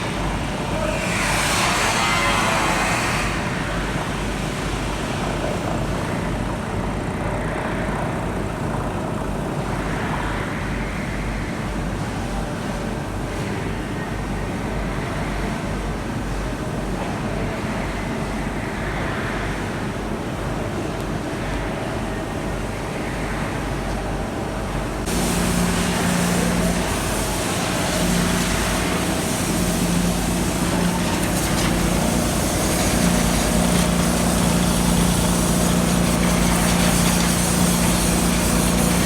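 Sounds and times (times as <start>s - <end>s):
milling machine cutting iron: 0.6s - 3.6s, 25.1s - 39.0s
low motor hum: 25.0s - 39.0s.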